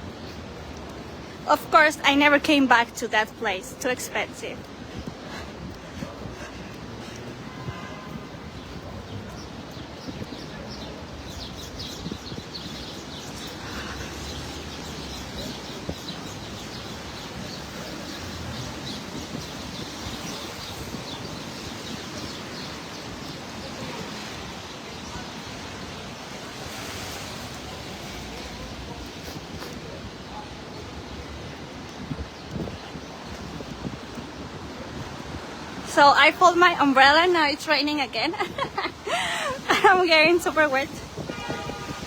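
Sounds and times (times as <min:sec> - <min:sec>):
traffic on wet pavement: 0:00.0 - 0:42.0
falling rain: 0:13.1 - 0:32.1.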